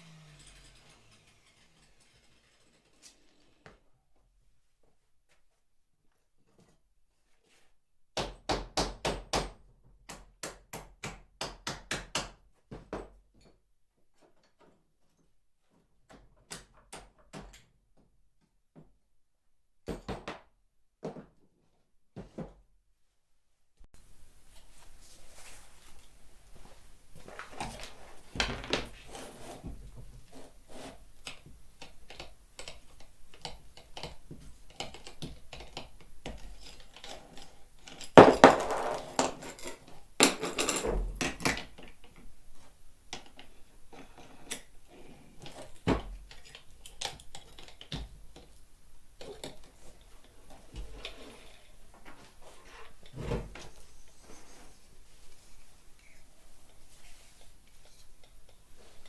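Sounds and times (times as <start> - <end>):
clatter of small knocks: 31.3 - 42.2.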